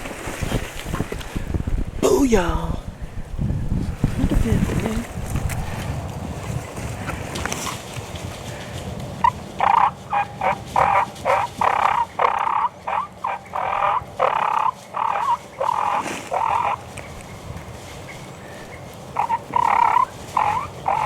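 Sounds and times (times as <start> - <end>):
wild turkey yelping: 9.2 - 17.3, 18.1 - 21.0.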